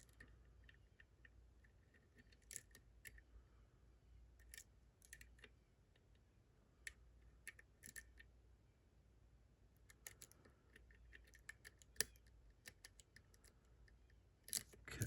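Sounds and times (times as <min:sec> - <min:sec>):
lock pick clicking on pins: 0:02.2 - 0:03.2, 0:04.4 - 0:05.5, 0:06.9 - 0:08.2, 0:09.8 - 0:13.5, 0:14.4 - 0:14.9.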